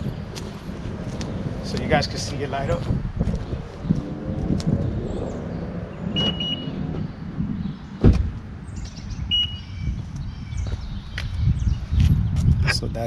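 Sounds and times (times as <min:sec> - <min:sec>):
short high beeps: 0:06.2 - 0:06.7
car door heavy thump: 0:08.0 - 0:08.4.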